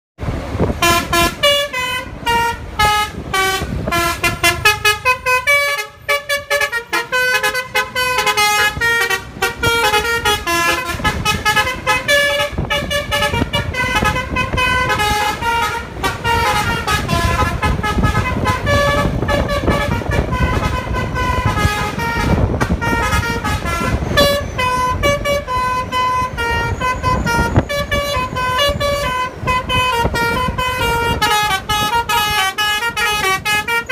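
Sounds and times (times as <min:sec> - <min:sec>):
bus air horn playing a melody: 0:00.6 - 0:33.9.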